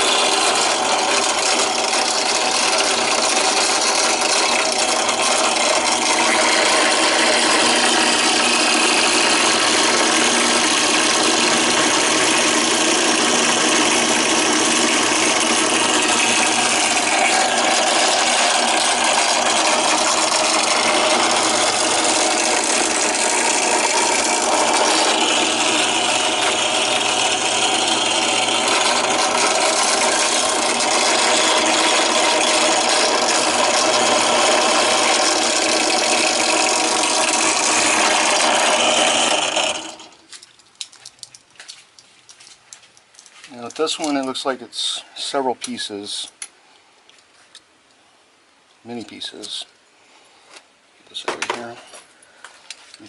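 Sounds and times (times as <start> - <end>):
drill bit grinding metal: 0.0 - 40.2
drill press motor hum: 0.0 - 40.2.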